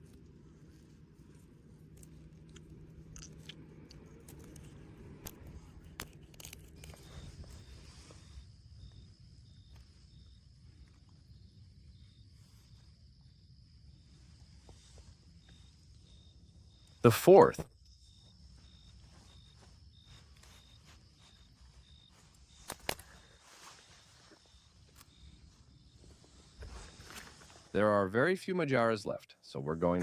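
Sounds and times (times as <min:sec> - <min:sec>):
night insects buzzing and chirping: 0:00.0 - 0:30.0
sharp clicks and rustles: 0:01.9 - 0:08.2.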